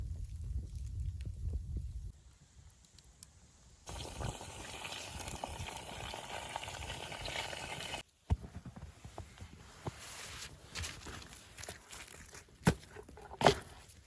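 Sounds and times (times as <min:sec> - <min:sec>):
food sizzling in hot oil: 0:03.9 - 0:08.0.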